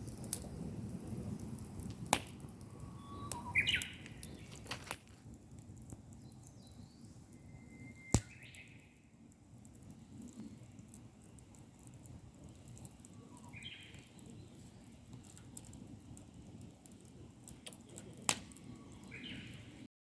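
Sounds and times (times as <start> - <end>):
small birds chirping: 2.6 - 4.7, 6.1 - 19.8.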